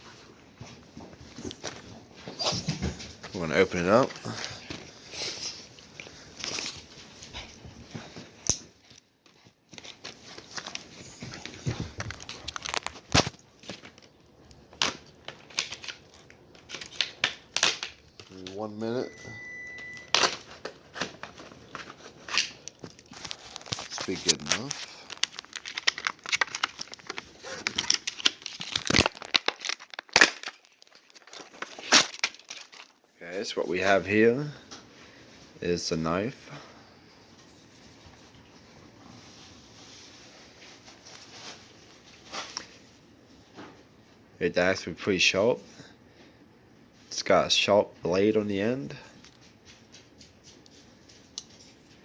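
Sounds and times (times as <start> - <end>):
packaging rustling and scraping: 8.2 - 18.6, 20.1 - 33.1.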